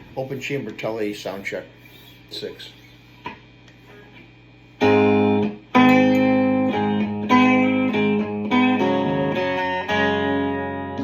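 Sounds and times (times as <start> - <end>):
electric guitar chords: 3.2 - 11.0.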